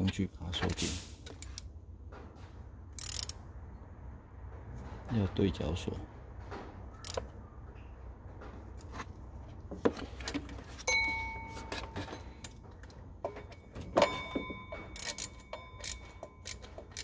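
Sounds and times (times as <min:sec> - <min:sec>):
ringing metallic clanks: 0:10.2 - 0:17.0
metal hand tools clinking: 0:13.3 - 0:17.0.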